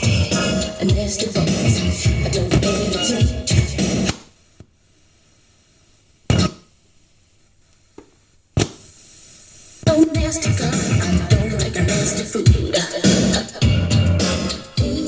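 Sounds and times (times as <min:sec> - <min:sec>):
hip hop music with record scratching: 0:00.0 - 0:04.5, 0:06.2 - 0:06.7, 0:08.6 - 0:15.0
faint steady hiss: 0:00.0 - 0:13.6.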